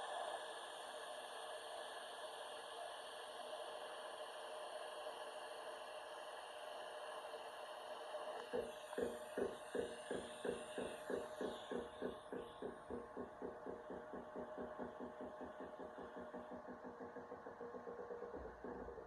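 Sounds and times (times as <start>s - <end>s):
rhythmic pulsing buzz: 7.9s - 19.0s.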